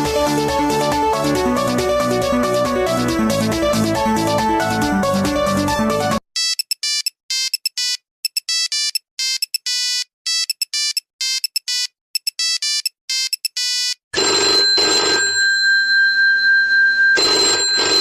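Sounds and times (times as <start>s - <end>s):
beeping phone ringtone: 6.4s - 18.0s
fuller ringing sound: 14.2s - 18.0s.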